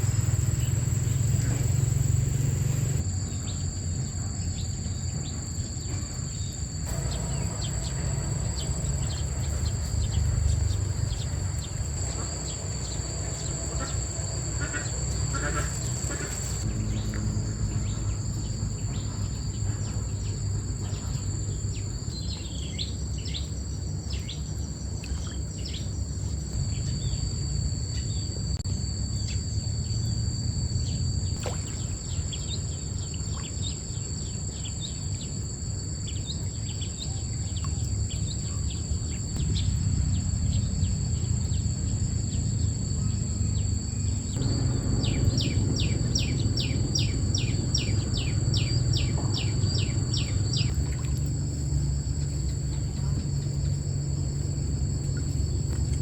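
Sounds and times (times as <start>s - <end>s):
low rumble: 0.0s - 22.2s, 38.7s - 56.0s
insects droning: 0.0s - 56.0s.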